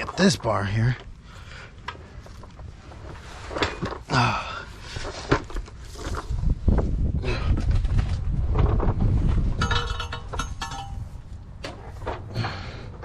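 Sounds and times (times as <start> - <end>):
metal parts knocking and clinking: 9.5 - 11.8.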